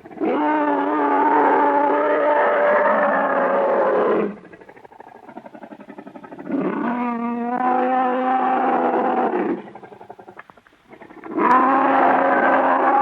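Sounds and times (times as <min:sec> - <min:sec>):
monster roar: 0:11.3 - 0:13.0.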